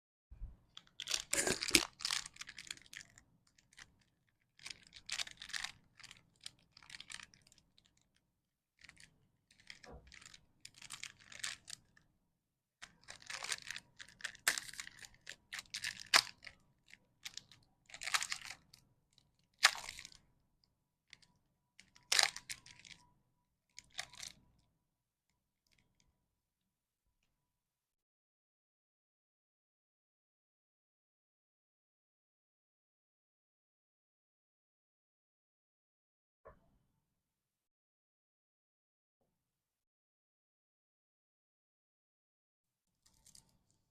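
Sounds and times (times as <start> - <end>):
plastic wrappers crinkling and tearing: 0.7 - 8.0, 8.8 - 11.9, 12.8 - 16.6, 17.2 - 18.8, 19.5 - 20.2, 21.8 - 23.0, 23.8 - 24.4.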